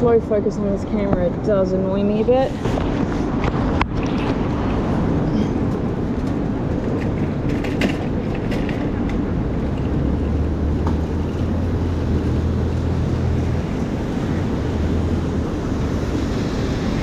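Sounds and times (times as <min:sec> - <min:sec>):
traffic on wet roads: 0:02.6 - 0:17.0
deep engine drone: 0:02.7 - 0:17.0.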